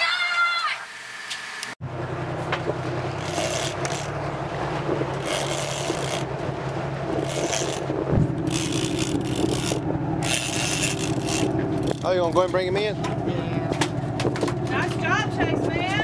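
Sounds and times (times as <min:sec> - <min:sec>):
boat engine running: 0:01.8 - 0:16.0
fishing reel rasping: 0:03.2 - 0:04.1, 0:05.2 - 0:06.3, 0:07.2 - 0:07.8, 0:08.5 - 0:12.1.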